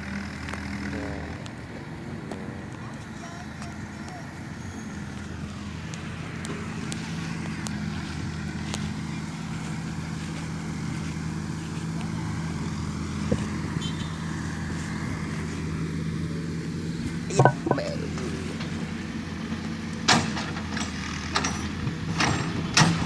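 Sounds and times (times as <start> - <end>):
brief knock: 17.4 - 17.9.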